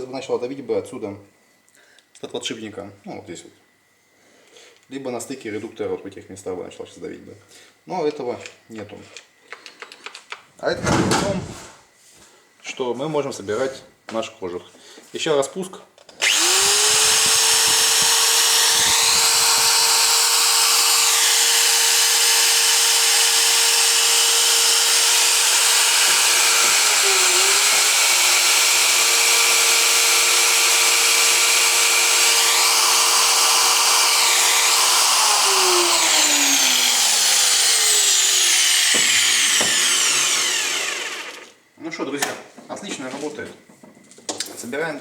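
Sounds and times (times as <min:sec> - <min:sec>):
angle grinder running: 0:16.2 - 0:41.5
grinder winding down whine: 0:16.2 - 0:41.5.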